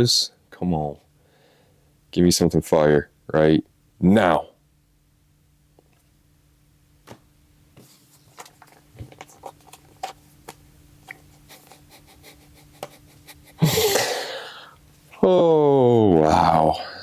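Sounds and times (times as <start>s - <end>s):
faint steady hum: 0.0s - 17.0s
cards clicking and rustling: 7.8s - 11.3s.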